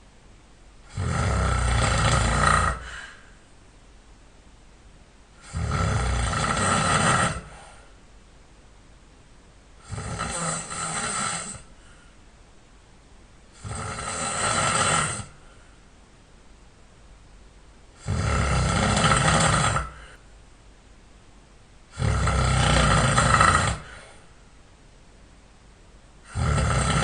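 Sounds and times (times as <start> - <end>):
man snoring: 0.9 - 3.2, 5.4 - 7.7, 9.8 - 11.7, 13.6 - 15.4, 18.0 - 20.2, 21.9 - 24.2, 26.2 - 27.0.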